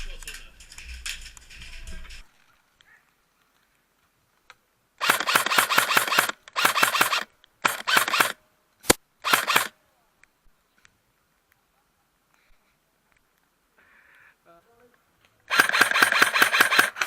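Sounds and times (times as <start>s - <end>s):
airsoft rifle firing bursts: 5.0s - 8.4s, 9.2s - 9.7s, 15.5s - 17.0s.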